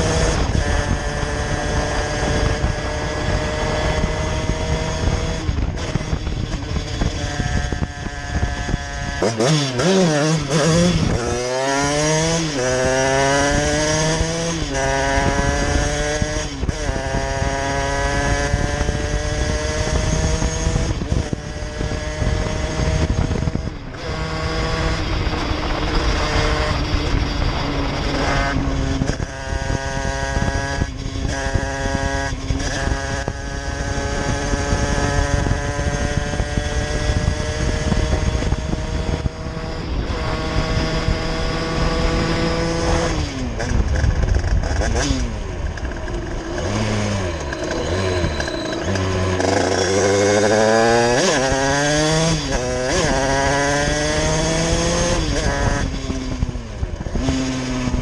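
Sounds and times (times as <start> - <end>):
moped two-stroke engine revving: 0.0 - 58.0
wind rumbling on microphone: 0.0 - 58.0.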